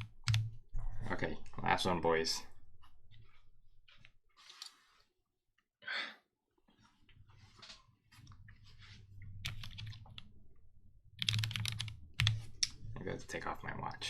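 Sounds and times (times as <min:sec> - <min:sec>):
mechanical keyboard typing: 0:00.0 - 0:00.5, 0:09.4 - 0:10.2, 0:11.2 - 0:12.8.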